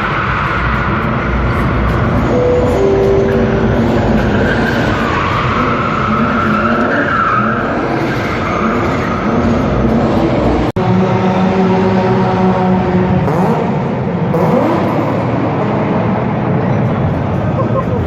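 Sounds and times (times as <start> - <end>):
car engine revving high: 7.6 - 16.6.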